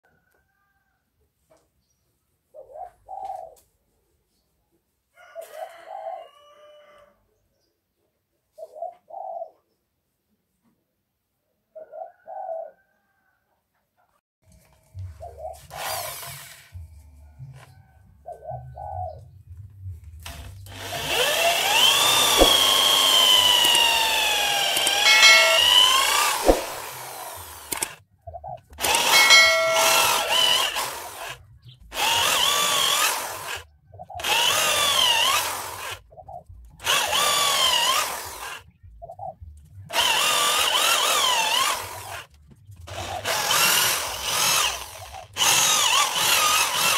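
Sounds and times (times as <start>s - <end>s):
power tool motor whine: 20.3s - 27.9s, 28.8s - 33.6s, 34.2s - 36.0s, 36.8s - 38.6s, 40.0s - 42.2s, 42.9s - 46.9s.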